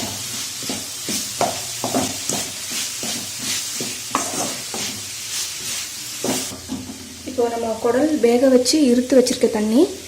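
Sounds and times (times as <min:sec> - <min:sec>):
spatula scraping frying pan: 0:00.0 - 0:06.8
light sizzle: 0:00.0 - 0:10.0.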